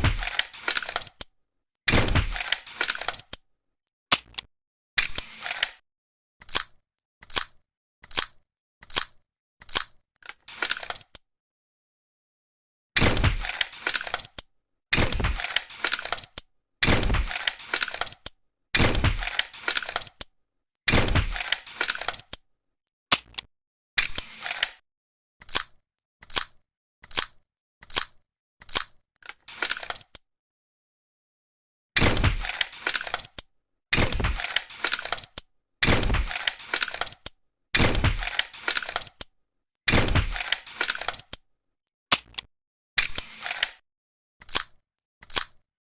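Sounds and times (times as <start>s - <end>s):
quick mechanical clicks: 0.0s - 1.3s, 1.9s - 3.4s, 6.4s - 11.2s, 13.0s - 20.3s, 20.9s - 22.4s, 25.4s - 30.2s, 32.0s - 39.3s, 39.9s - 41.4s, 44.4s - 45.6s
dart pistol shot: 1.9s - 2.5s, 13.0s - 13.6s, 32.0s - 32.6s, 37.8s - 38.4s, 39.9s - 40.5s
pistol shot with thump: 39.9s - 40.5s.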